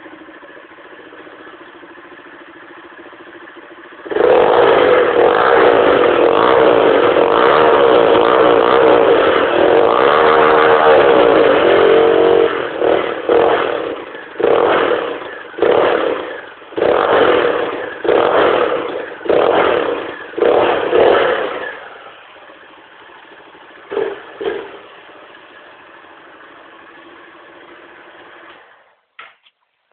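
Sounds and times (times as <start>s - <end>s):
motorcycle engine revving: 0.0s - 29.0s.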